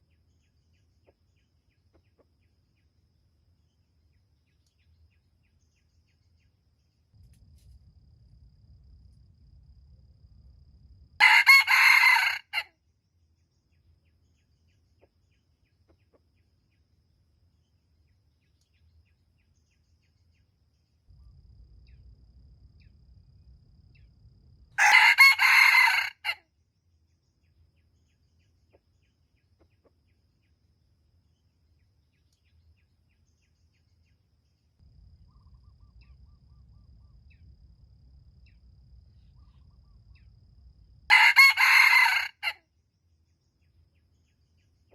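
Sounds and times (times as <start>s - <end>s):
rooster crowing: 11.2s - 12.7s, 24.8s - 26.4s, 41.1s - 42.6s.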